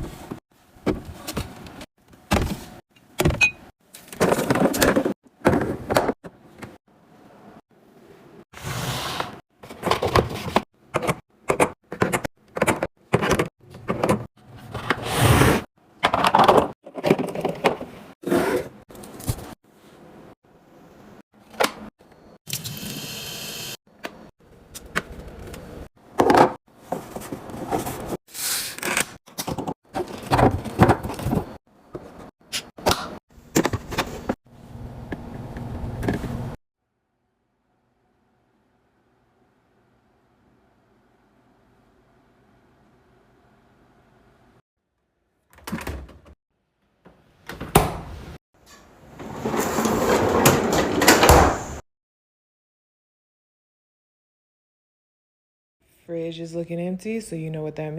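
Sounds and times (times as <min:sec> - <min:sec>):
drawers sliding and closing: 0:08.6 - 0:19.6, 0:47.4 - 0:51.8.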